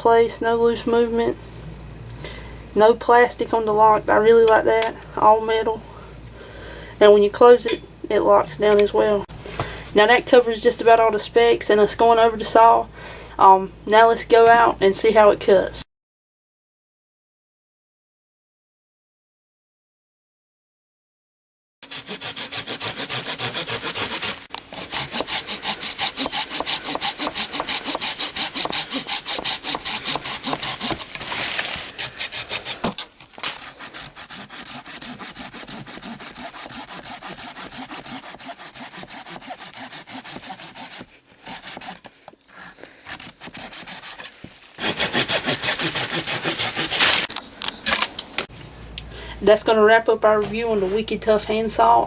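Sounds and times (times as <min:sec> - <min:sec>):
handsaw sawing through wood: 0:21.8 - 0:47.3.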